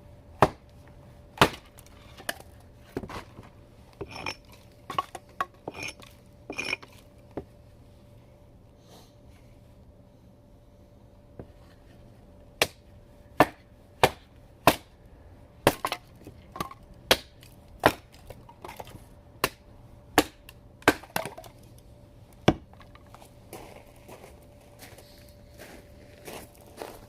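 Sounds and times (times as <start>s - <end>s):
axe chopping wood: 0.4s - 0.7s, 1.4s - 3.2s, 12.6s - 14.9s, 15.6s - 19.6s, 20.2s - 21.5s, 22.4s - 22.8s.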